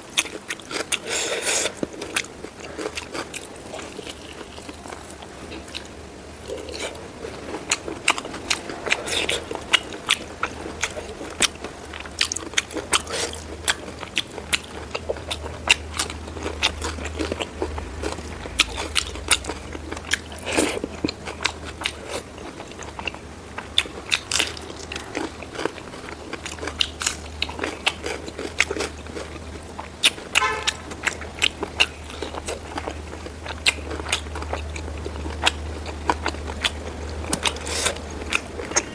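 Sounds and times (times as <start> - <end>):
close chewing and biting: 0.0 - 38.9
low hum: 6.0 - 25.5.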